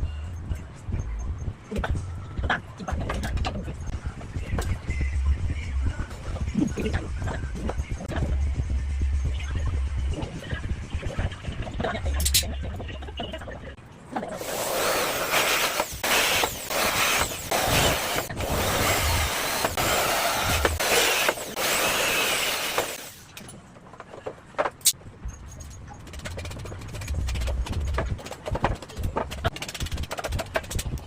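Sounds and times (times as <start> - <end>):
power tool running into wood: 14.4 - 23.2
knocks and clicks of wood and tools: 22.7 - 31.0.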